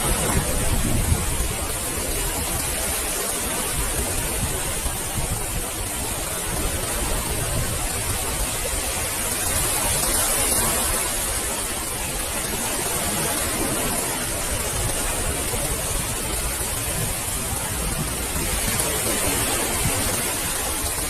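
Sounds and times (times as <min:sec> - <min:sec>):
ocean waves on a beach: 0:00.0 - 0:21.0.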